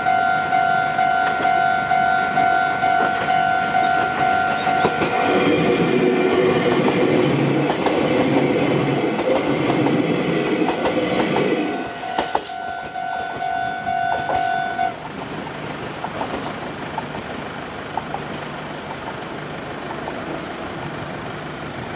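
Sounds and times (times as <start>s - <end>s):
crossing warning bell ringing: 0.0s - 6.4s, 10.7s - 15.0s
train wheels clattering: 2.9s - 17.3s.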